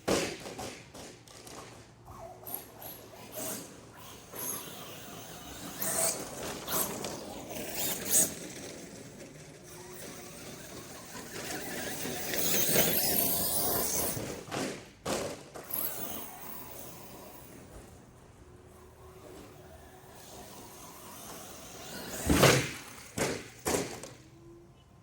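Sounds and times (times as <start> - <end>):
toy truck rattling and clicking: 2.4 - 18.0.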